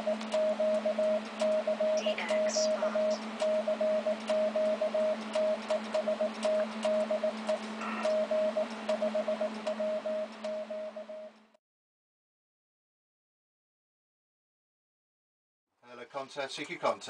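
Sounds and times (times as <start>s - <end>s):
morse code tone: 0.0s - 11.4s
crackling static clicks: 0.0s - 11.6s
steady low hum: 0.0s - 11.6s
radio band hiss: 2.0s - 3.3s.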